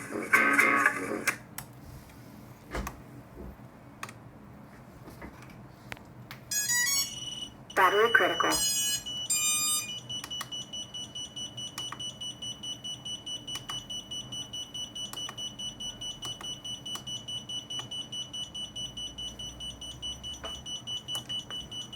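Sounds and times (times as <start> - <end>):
electronic buzzer alarm beeping: 6.5 - 21.9.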